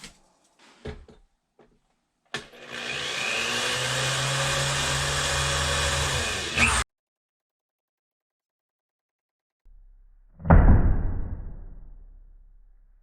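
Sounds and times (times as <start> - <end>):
electric motor machine running: 2.4 - 6.8.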